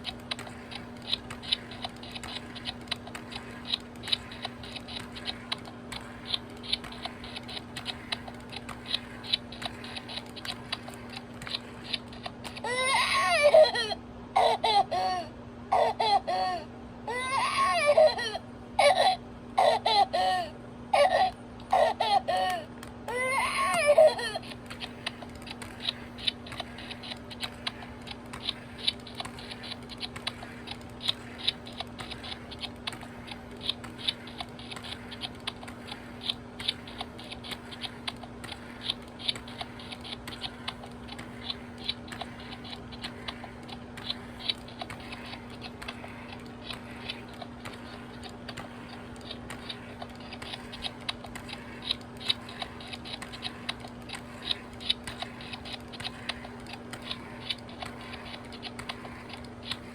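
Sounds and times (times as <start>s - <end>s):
light clicks and taps: 0.0s - 12.6s, 23.7s - 59.9s
talking doll baby voice: 12.6s - 24.4s.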